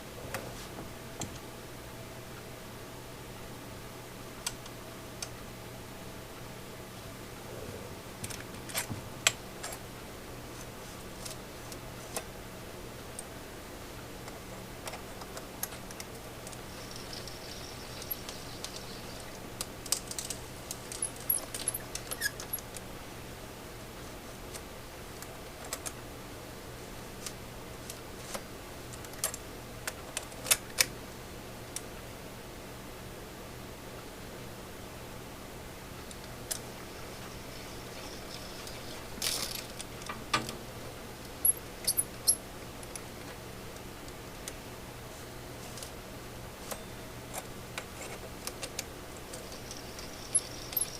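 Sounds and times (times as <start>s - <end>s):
small metal clicks: 14.2s - 22.8s.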